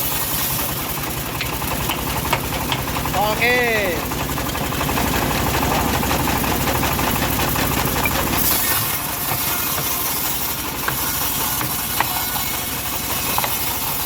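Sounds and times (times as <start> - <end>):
bandsaw cutting log hiss: 0.0 - 1.0, 8.3 - 14.0
deep engine rumble: 0.0 - 14.0.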